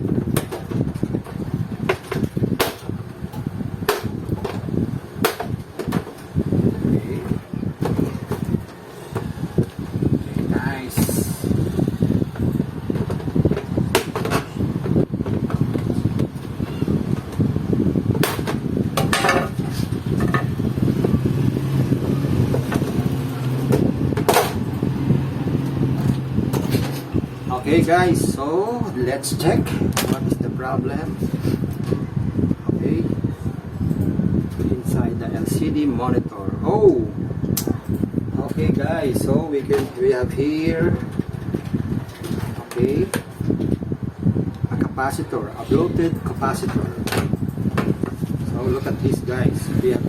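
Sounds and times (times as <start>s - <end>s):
low steady rumble: 0.0s - 39.7s.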